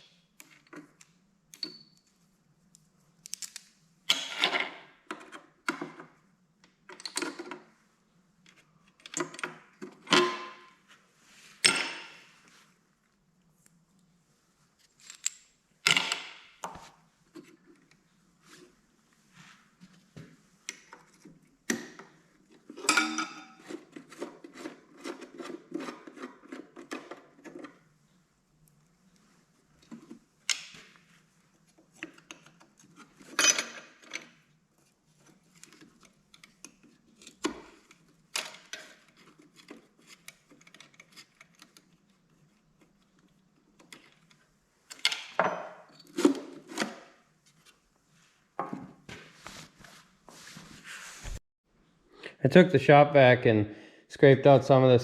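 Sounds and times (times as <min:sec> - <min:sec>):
hand tools and metal parts clattering: 0:14.8 - 0:16.8, 0:20.8 - 0:27.8, 0:32.0 - 0:34.4.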